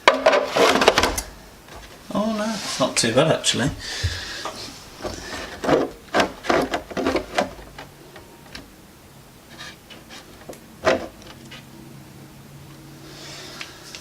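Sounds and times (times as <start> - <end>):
hard plastic knocks and rubbing: 3.6 - 7.9.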